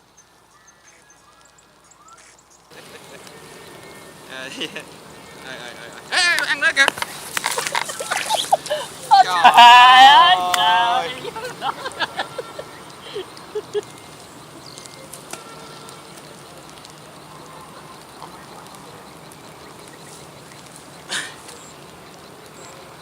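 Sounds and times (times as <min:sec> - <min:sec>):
faint high whine: 0:00.0 - 0:23.0
insects buzzing: 0:00.0 - 0:23.0
small clicks: 0:12.8 - 0:17.1.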